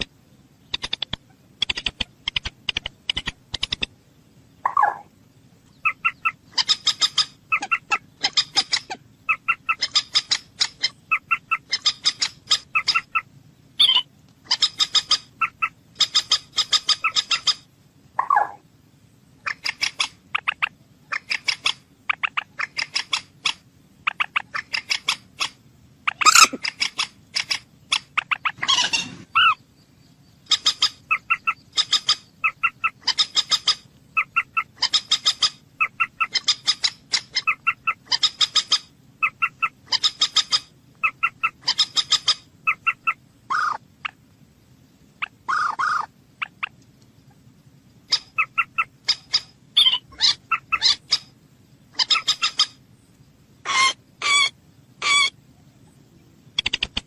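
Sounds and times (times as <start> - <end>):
moorhen calling: 4.6 - 18.6, 19.4 - 44.3, 45.1 - 52.8, 53.6 - 56.9.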